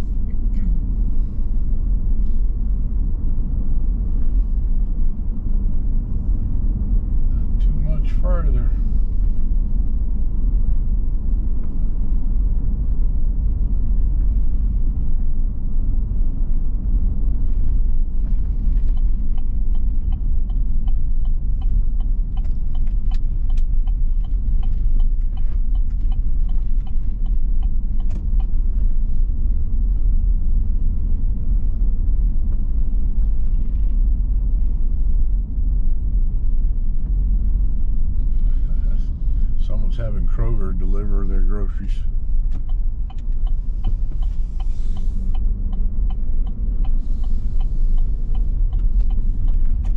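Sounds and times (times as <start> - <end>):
car road rumble inside cabin: 0.0 - 49.9
turn signal ticking: 13.6 - 33.6, 34.4 - 49.9.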